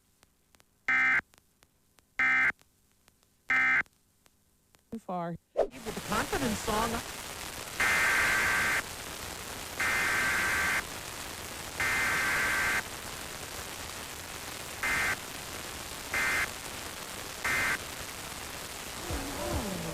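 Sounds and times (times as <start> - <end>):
radio static: 5.6 - 9.0, 9.8 - 10.9, 11.7 - 13.0, 14.8 - 15.3, 16.0 - 18.0, 18.8 - 19.9.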